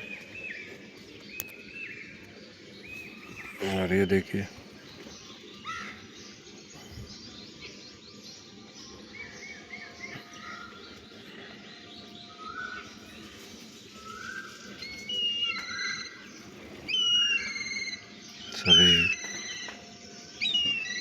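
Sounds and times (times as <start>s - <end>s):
small birds chirping: 0.0s - 21.0s.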